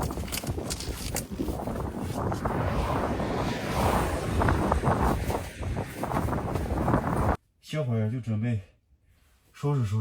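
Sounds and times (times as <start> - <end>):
wind buffeting microphone: 0.0 - 7.4.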